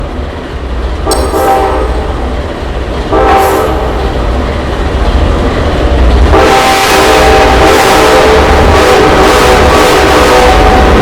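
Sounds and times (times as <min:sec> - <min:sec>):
steady low rumble: 0:00.0 - 0:06.4
locomotive air horn blasts: 0:01.1 - 0:02.3, 0:03.1 - 0:04.1, 0:06.3 - 0:11.0.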